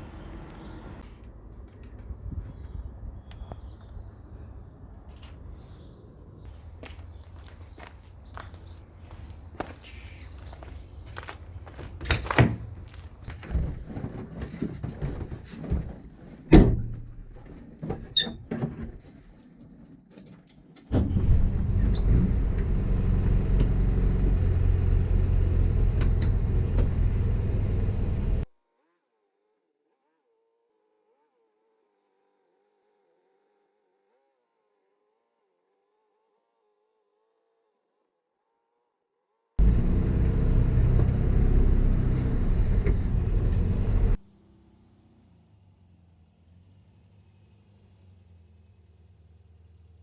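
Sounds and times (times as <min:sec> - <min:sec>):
vehicle engine rumbling: 0:00.0 - 0:20.0, 0:20.9 - 0:28.5, 0:39.6 - 0:50.0
knocks and clunks: 0:11.7 - 0:19.2.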